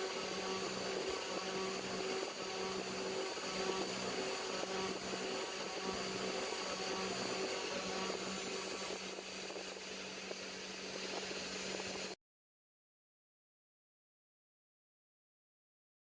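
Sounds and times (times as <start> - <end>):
air pump humming: 0.0 - 12.2.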